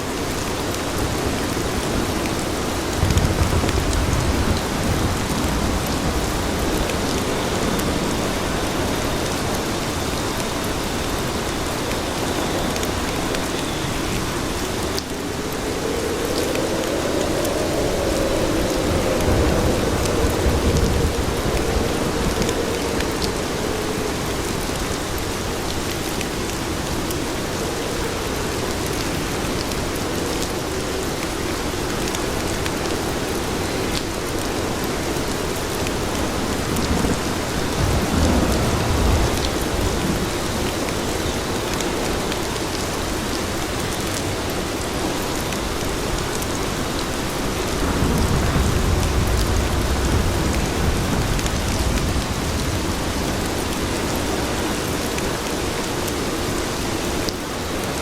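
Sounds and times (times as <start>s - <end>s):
dense rain on pavement: 0.0s - 58.0s
low rumble: 14.6s - 25.9s.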